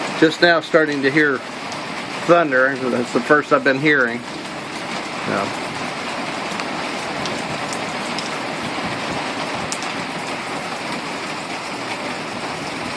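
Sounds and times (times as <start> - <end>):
heavy rain falling: 0.0 - 12.9
sharp ticks of raindrops: 0.0 - 12.9.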